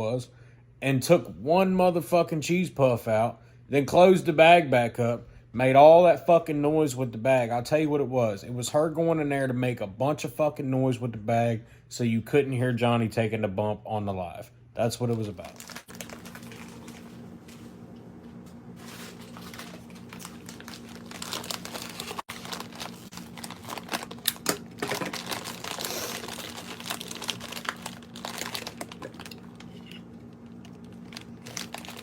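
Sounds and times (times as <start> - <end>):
steady low hum: 0.0 - 32.0
plastic snack bag crinkling: 15.0 - 17.3, 18.8 - 32.0.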